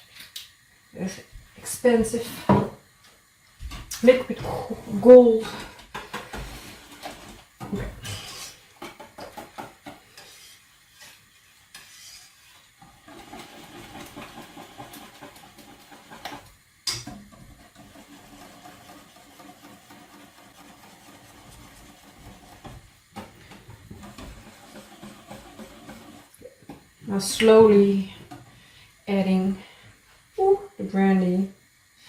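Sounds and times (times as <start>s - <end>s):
whisking in a bowl: 5.0s - 7.6s, 8.3s - 26.4s.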